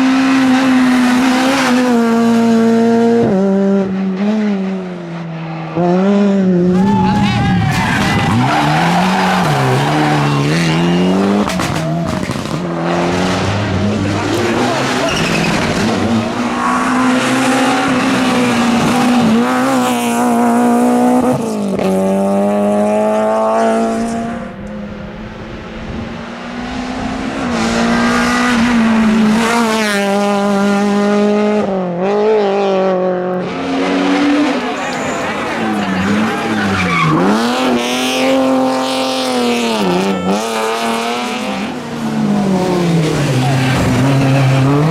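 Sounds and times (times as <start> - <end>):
rally car engine accelerating: 0.0 - 44.9
tyre squeal: 15.0 - 17.8, 34.8 - 37.7.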